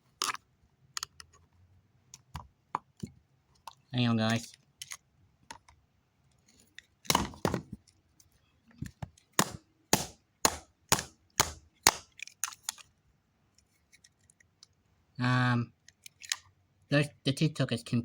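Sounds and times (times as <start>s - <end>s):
hand tool striking plastic: 9.4s - 12.8s.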